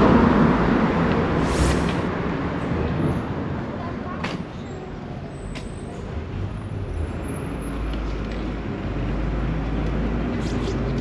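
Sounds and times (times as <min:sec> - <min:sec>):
vehicle engine rumbling: 0:00.0 - 0:03.7.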